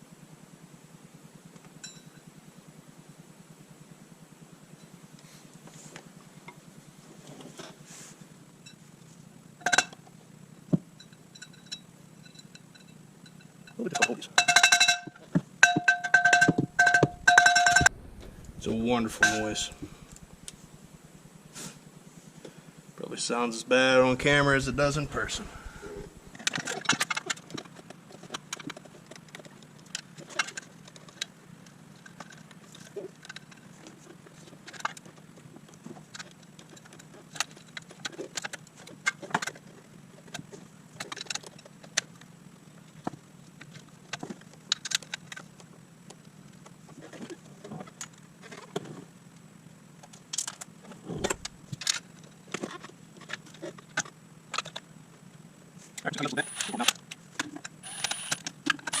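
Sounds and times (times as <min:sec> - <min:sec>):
metal tools and bolts clinking: 0:11.0 - 0:17.9
steady low hum: 0:15.2 - 0:26.8, 0:49.4 - 0:59.0.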